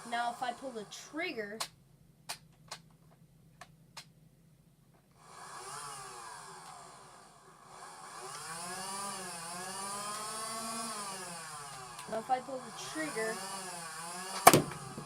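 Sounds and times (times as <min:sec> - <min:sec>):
electric flywheel motors whining: 0:00.0 - 0:01.2, 0:05.2 - 0:15.0.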